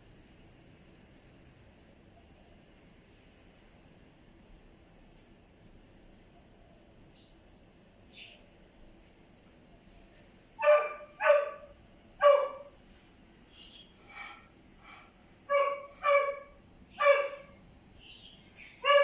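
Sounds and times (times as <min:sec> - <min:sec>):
dog barking: 0:10.6 - 0:12.7, 0:15.5 - 0:17.6, 0:18.8 - 0:19.0.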